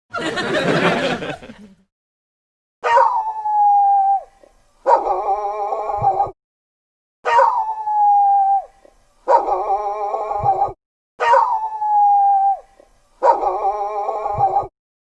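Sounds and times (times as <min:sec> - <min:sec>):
dog howling: 0:02.8 - 0:04.2, 0:07.3 - 0:08.7, 0:09.3 - 0:12.6, 0:13.2 - 0:14.7.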